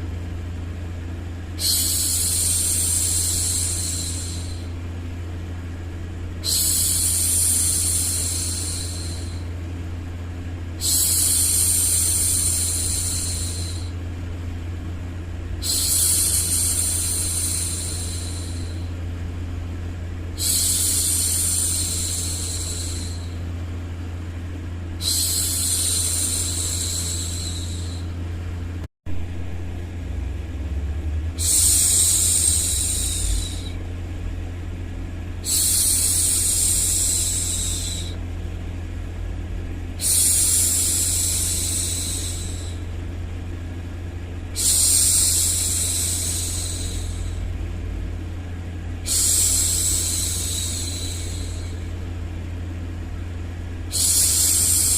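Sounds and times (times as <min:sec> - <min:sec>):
low white noise rumble: 0:00.0 - 0:54.9
woman shushing: 0:01.6 - 0:04.7, 0:06.4 - 0:09.5, 0:15.6 - 0:18.9, 0:25.0 - 0:28.1, 0:31.4 - 0:33.8, 0:35.4 - 0:38.2, 0:40.0 - 0:42.8, 0:49.0 - 0:51.9, 0:53.9 - 0:54.9.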